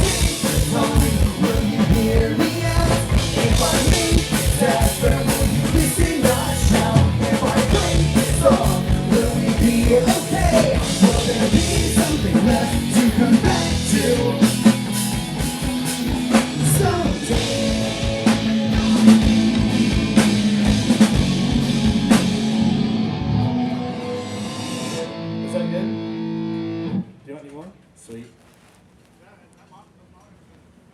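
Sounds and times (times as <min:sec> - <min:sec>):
person singing: 0:00.0 - 0:14.9, 0:16.6 - 0:19.8
drum kit: 0:00.0 - 0:23.2
bass guitar: 0:00.0 - 0:27.1
electric guitar: 0:00.0 - 0:27.2.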